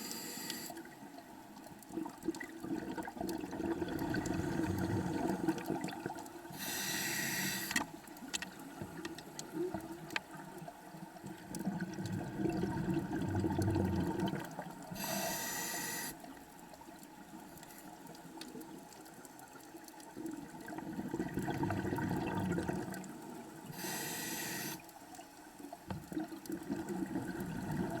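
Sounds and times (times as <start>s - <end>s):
regulator inhalation hiss: 0.0s - 0.8s, 6.6s - 7.8s, 14.9s - 16.2s, 23.7s - 24.8s
exhaled bubbles bubbling: 1.9s - 6.3s, 11.3s - 15.0s, 20.1s - 23.5s, 26.1s - 28.0s.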